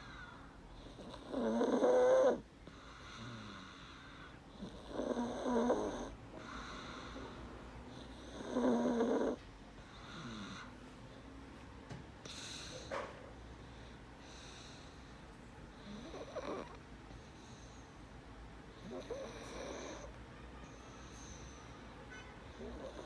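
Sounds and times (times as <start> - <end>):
boy snoring: 0.9 - 2.4, 3.1 - 4.0, 4.6 - 7.3, 8.0 - 9.4, 10.0 - 10.7, 15.9 - 16.8, 18.8 - 20.1, 22.6 - 23.0
soft breathing: 2.4 - 4.9, 5.8 - 8.4, 9.2 - 23.0.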